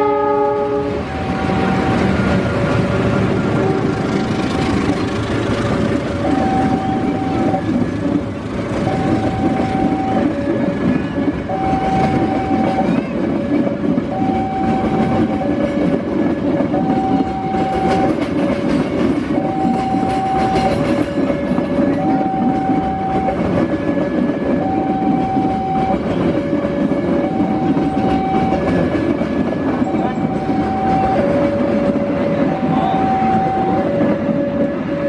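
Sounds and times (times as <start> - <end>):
train wheels clattering on rail: 0.8 - 35.0
level crossing alarm two-tone: 6.2 - 7.8, 8.8 - 13.2, 14.0 - 15.9, 16.6 - 18.2, 19.3 - 23.7, 24.5 - 28.9, 29.8 - 35.0.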